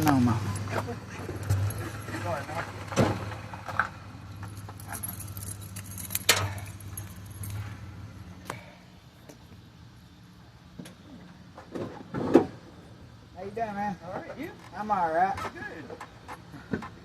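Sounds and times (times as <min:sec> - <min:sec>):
sharp metallic clinks: 0:00.0 - 0:08.0
low steady hum: 0:00.0 - 0:16.7.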